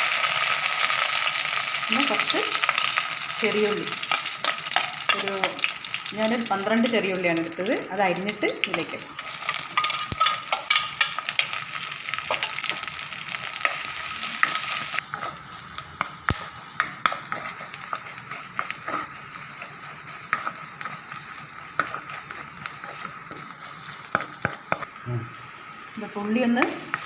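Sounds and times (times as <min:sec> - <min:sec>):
shallots sizzling in oil: 0:00.0 - 0:27.0
spoon stirring and scraping pan: 0:02.0 - 0:06.0, 0:08.6 - 0:24.9.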